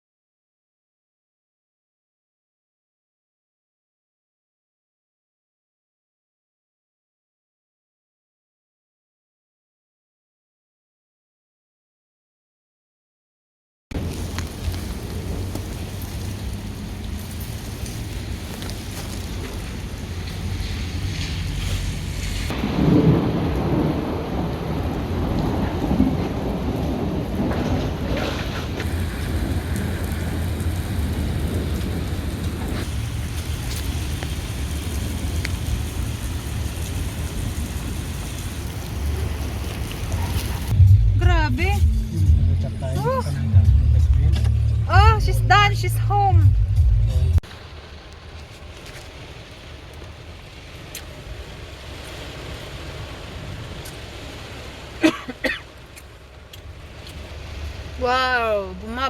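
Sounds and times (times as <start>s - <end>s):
low rumble: 14.0s - 53.5s
heavy rain falling: 14.0s - 59.0s.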